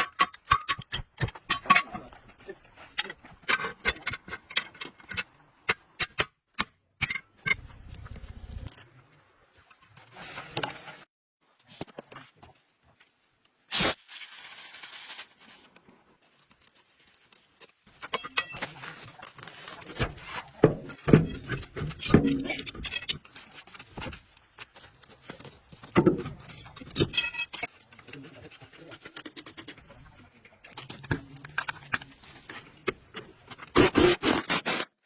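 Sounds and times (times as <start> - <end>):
metal tools clinking and scraping: 17.9 - 24.2, 25.3 - 29.9.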